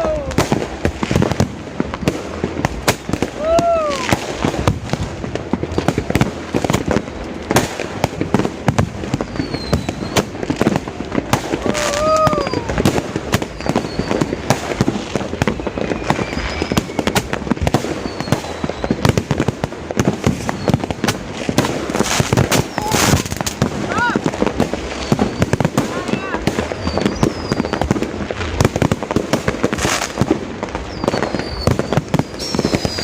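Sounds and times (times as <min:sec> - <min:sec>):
firecrackers popping: 0:00.0 - 0:33.0.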